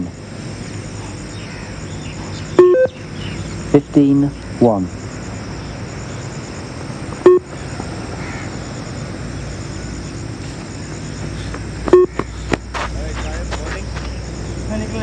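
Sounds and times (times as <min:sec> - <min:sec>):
steady background noise: 0:00.0 - 0:15.0
short electronic beeps: 0:02.6 - 0:03.0, 0:07.2 - 0:07.5, 0:11.9 - 0:12.2.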